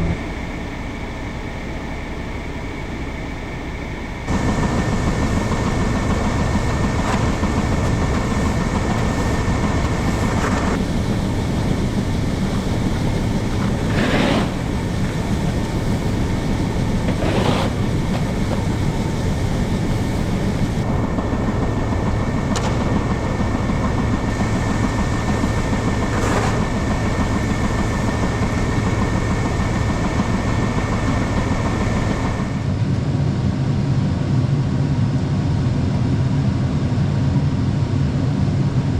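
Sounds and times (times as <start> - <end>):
constant high whine: 0.0 - 38.9
vehicle engine and road noise: 4.3 - 32.8.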